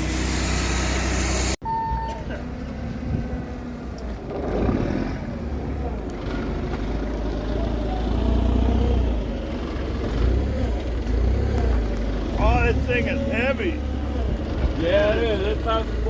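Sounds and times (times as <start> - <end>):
heavy equipment engine rumbling: 0.0 - 16.0.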